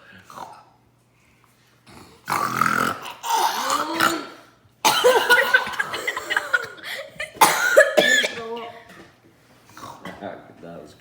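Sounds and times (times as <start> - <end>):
child burping: 2.6 - 8.9.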